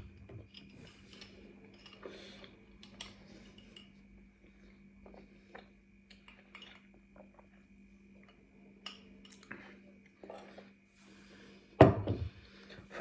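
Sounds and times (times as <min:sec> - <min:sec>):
faint steady hum: 0:00.0 - 0:13.0.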